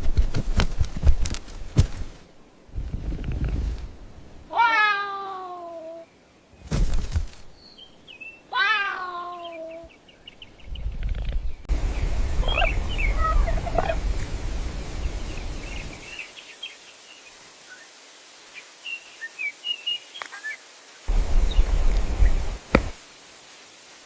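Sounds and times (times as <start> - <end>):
small birds chirping: 7.4 - 14.1, 14.8 - 22.7.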